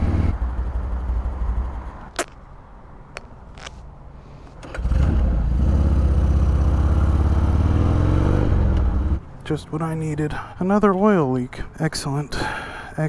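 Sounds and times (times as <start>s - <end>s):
sharp clicks: 2.1s - 2.5s.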